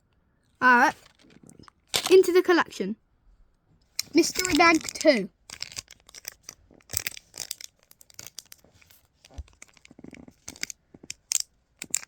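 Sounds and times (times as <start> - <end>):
bag crinkling and tearing: 4.0 - 11.2.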